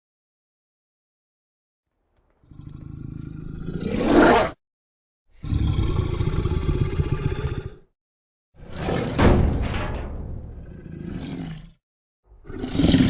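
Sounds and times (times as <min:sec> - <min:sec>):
dinosaur growl and roar: 0:02.4 - 0:04.6, 0:05.4 - 0:07.9, 0:08.6 - 0:09.4, 0:10.5 - 0:11.8, 0:12.4 - 0:13.0
low rattling growl: 0:08.6 - 0:13.0.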